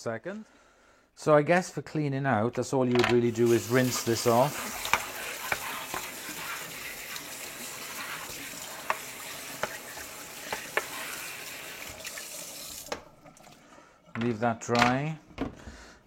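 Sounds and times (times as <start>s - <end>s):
tap water running: 3.2s - 14.4s.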